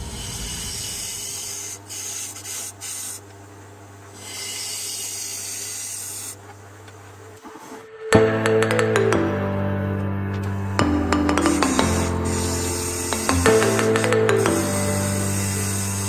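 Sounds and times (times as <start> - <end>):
tool hissing against spinning wood: 0.0 - 6.8, 11.3 - 16.0
lathe low hum: 0.0 - 16.0.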